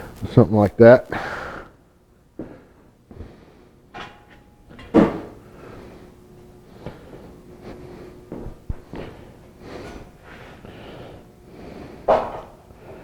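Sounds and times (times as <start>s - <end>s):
loud clunk: 4.0s - 5.4s.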